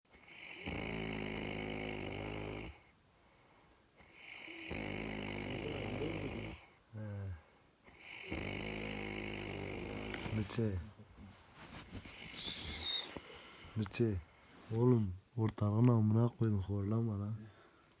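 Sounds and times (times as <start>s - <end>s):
man snoring: 0.3s - 2.9s, 4.2s - 10.8s
short snort: 4.6s - 6.6s, 11.5s - 13.8s.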